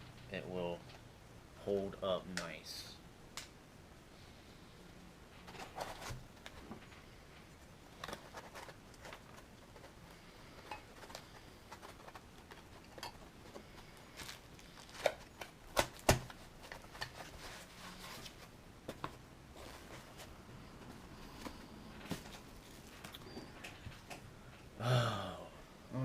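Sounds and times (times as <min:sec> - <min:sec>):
packaging rustling and clicks: 0:07.9 - 0:24.2.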